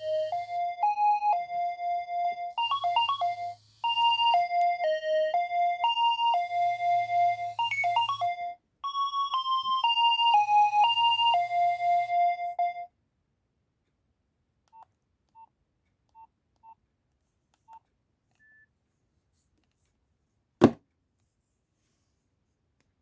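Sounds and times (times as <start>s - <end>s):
phone ringtone beeping melody: 0.0s - 12.9s.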